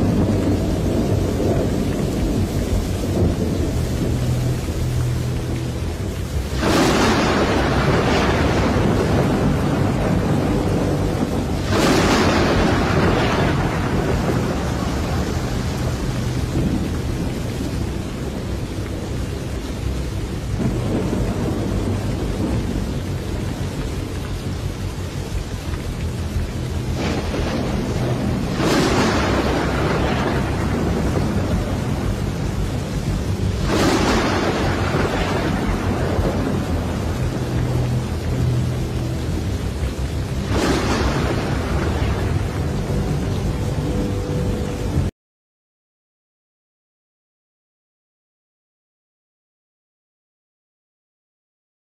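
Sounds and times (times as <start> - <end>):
rain falling: 0.0 - 45.1
thunder claps: 0.0 - 45.1.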